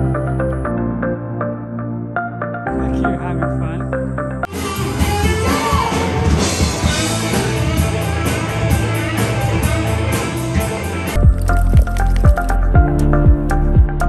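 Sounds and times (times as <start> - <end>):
rock music with guitar and drums: 4.0 - 14.0.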